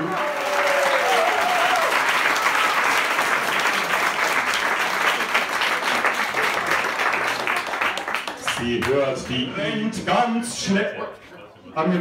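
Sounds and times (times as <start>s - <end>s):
audience applauding: 0.0s - 9.0s.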